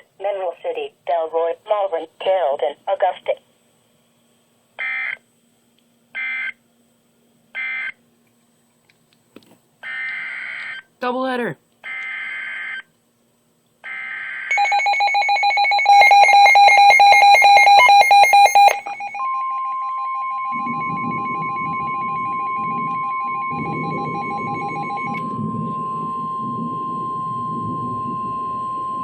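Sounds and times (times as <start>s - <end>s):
steady warning alarm tone: 13.9s - 29.0s
digital data tones: 14.5s - 29.0s
pulsing electronic alert beep: 14.5s - 29.0s.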